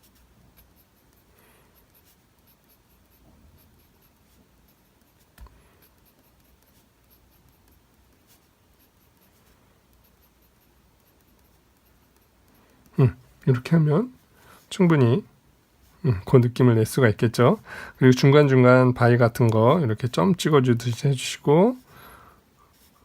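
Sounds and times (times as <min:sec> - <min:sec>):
pencil scratching on paper: 0:00.0 - 0:14.3, 0:22.6 - 0:23.0
pencil tick: 0:09.9 - 0:13.0.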